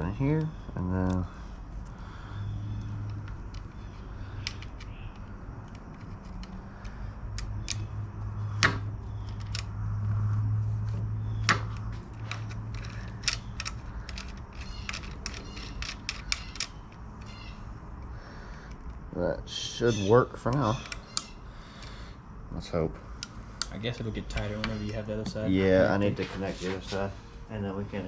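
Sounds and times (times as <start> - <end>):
steady low hum: 0.0 - 28.0
clicks and taps of metal parts: 2.8 - 7.9, 8.6 - 9.8, 11.5 - 19.0.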